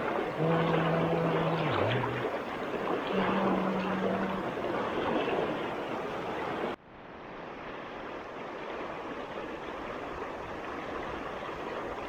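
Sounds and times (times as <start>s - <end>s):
rushing river water: 0.0s - 12.0s.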